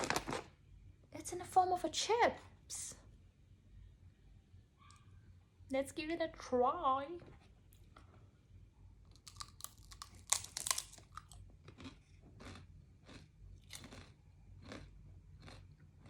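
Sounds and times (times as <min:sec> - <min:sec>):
chip crunching as chewed: 0:09.1 - 0:16.0.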